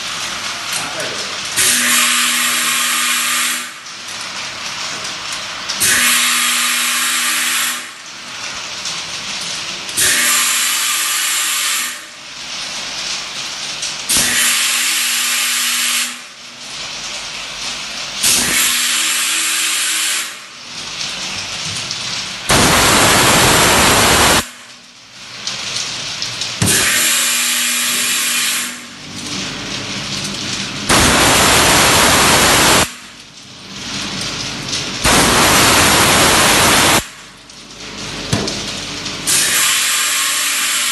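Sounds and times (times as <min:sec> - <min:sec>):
steady machine hum: 0:22.4 - 0:25.4, 0:28.9 - 0:39.3.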